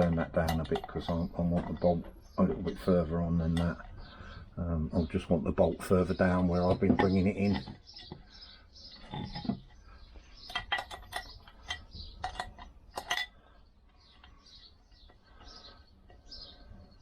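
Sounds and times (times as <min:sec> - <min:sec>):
spanner and nuts clinking: 0:00.0 - 0:04.1, 0:10.4 - 0:13.4.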